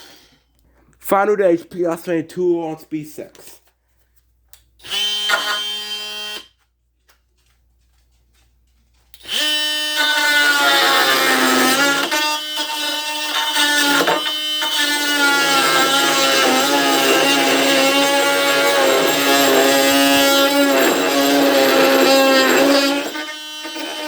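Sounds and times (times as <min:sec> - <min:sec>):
oscillating multi-tool buzzing whine: 0:04.8 - 0:06.5, 0:09.2 - 0:24.0.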